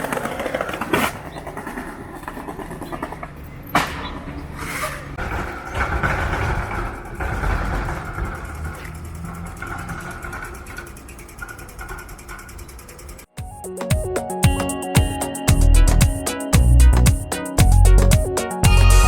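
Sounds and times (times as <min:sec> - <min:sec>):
vehicle running: 0:06.8 - 0:13.3.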